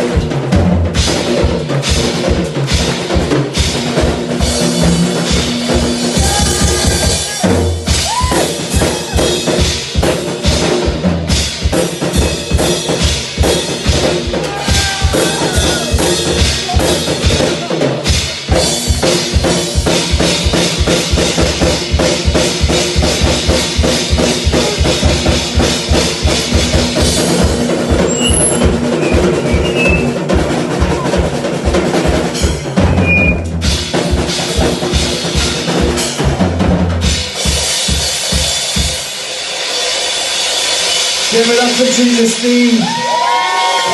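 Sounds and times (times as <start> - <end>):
drum kit solo: 0.0 - 43.9.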